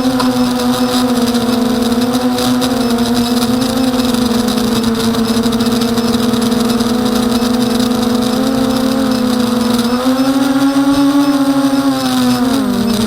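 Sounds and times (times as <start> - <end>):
quadcopter motors buzzing: 0.0 - 13.0.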